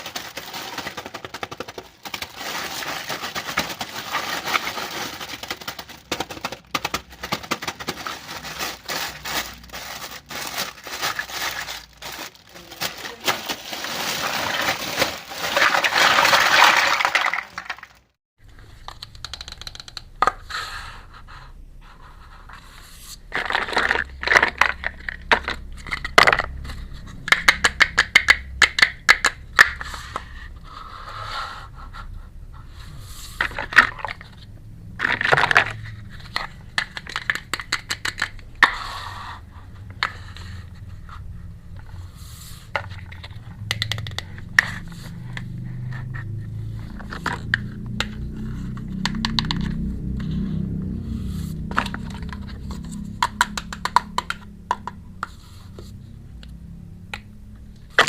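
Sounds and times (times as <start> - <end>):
packaging rustling: 0.0 - 18.0.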